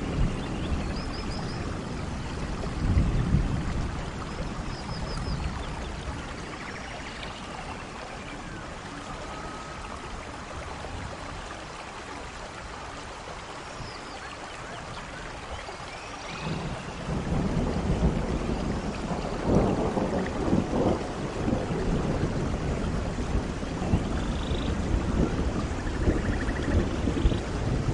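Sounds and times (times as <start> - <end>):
rolling thunder rumble: 0.0 - 11.5, 16.3 - 27.9
steady rain falling: 0.0 - 27.9.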